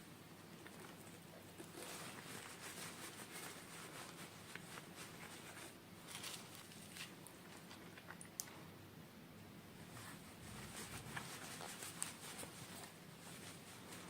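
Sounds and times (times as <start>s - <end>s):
faint rustling of plastic: 0.0s - 8.7s, 9.8s - 14.0s.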